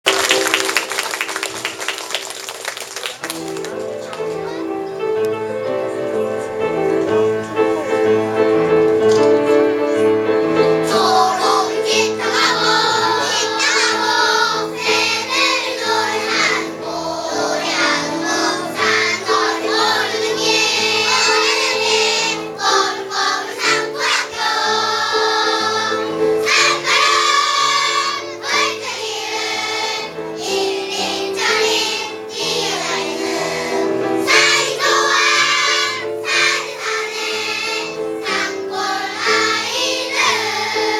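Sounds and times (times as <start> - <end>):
instrumental accompaniment: 3.0 - 40.9
children's choir singing: 10.8 - 40.9.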